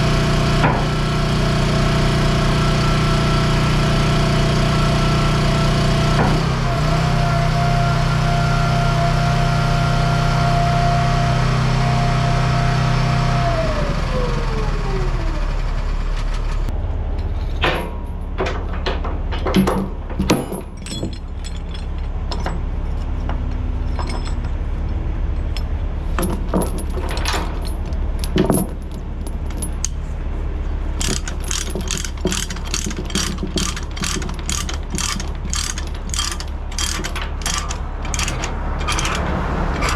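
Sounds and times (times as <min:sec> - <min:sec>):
hydraulic whine: 0:00.0 - 0:17.0, 0:30.6 - 0:39.9
engine idling: 0:00.0 - 0:17.2, 0:18.0 - 0:39.9
excavator diesel engine: 0:00.0 - 0:39.9
chains clanking and rattling: 0:17.2 - 0:30.1, 0:31.0 - 0:39.9
ratchet clicks: 0:31.0 - 0:39.9.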